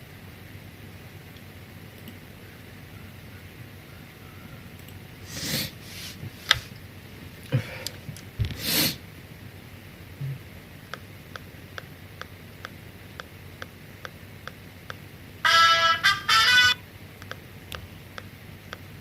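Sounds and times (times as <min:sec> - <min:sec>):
man sniffing and snorting: 0:05.2 - 0:06.5, 0:08.5 - 0:09.0
faint regular ticking: 0:10.9 - 0:15.1, 0:17.2 - 0:19.0.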